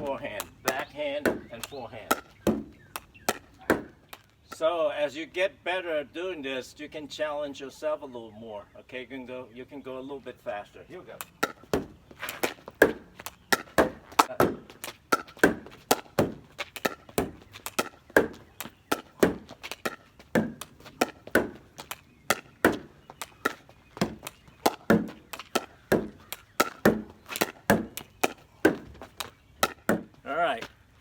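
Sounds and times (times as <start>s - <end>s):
ball hitting garage door: 0.0s - 4.0s, 11.4s - 30.2s
paddle hitting plastic ball: 0.0s - 4.6s, 11.2s - 30.2s.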